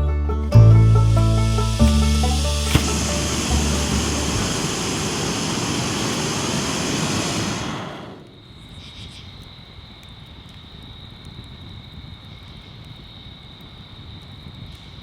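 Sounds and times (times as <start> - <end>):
high-pitched whine: 1.0 - 8.3
river water rushing: 1.2 - 7.2.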